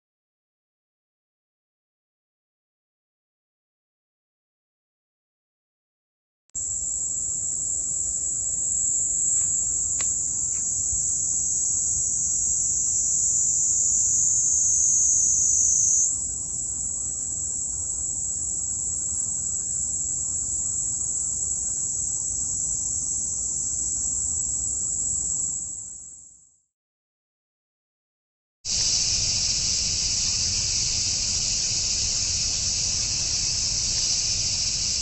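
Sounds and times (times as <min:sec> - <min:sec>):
cicada buzzing trill: 0:06.6 - 0:26.3, 0:28.7 - 0:35.0.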